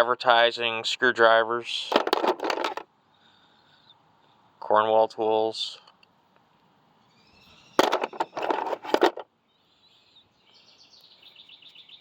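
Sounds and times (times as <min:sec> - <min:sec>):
screwdrivers knocking together: 0:01.9 - 0:02.8, 0:07.8 - 0:09.2.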